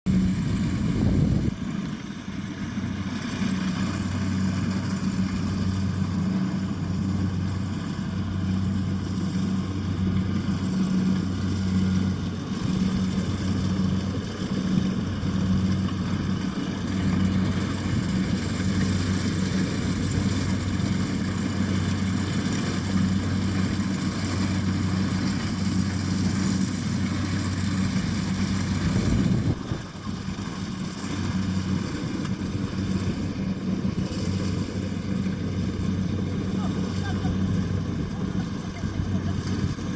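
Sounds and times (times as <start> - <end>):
harvesting machine engine running: 0.1 - 39.9.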